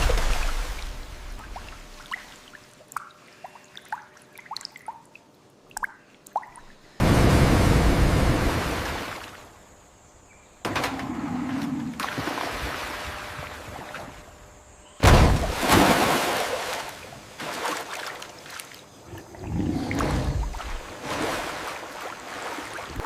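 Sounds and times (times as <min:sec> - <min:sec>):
water drips: 0:00.0 - 0:07.0.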